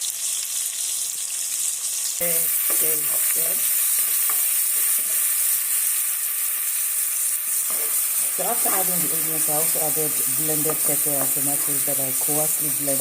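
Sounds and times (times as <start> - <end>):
food sizzling in hot oil: 0.0 - 13.0
spatula scraping a pan: 7.5 - 8.5, 10.2 - 13.0.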